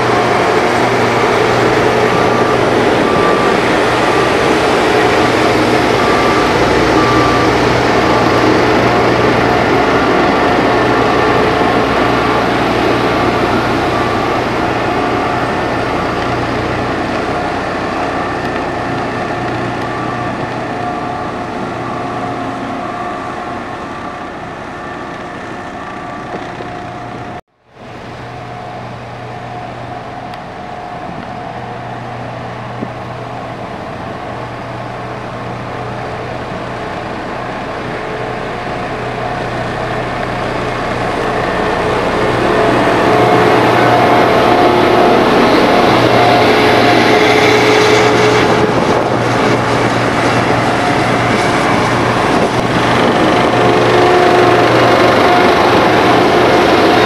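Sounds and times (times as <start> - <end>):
reversing alarm beeping: 0.0 - 27.4, 28.2 - 57.0
diesel engine running: 0.0 - 57.0.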